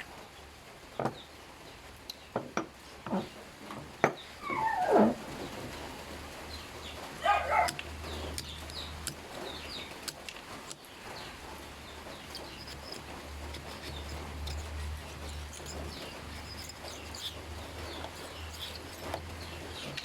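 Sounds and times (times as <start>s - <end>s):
short loud animal call: 4.4s - 5.2s
birds chirping: 6.5s - 10.1s, 13.6s - 20.0s.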